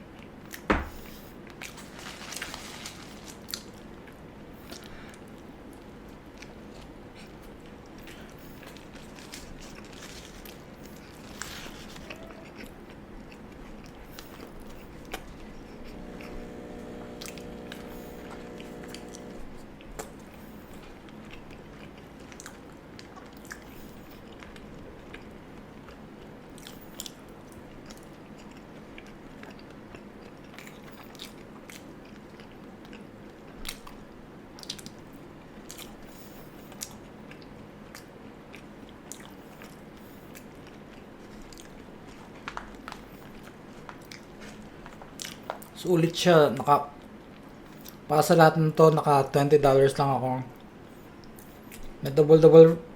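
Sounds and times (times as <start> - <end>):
chewing and biting: 3.4 - 45.8.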